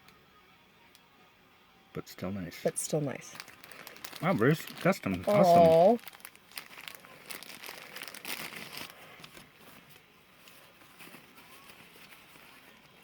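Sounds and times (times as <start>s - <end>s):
packaging crinkling: 3.3s - 13.0s.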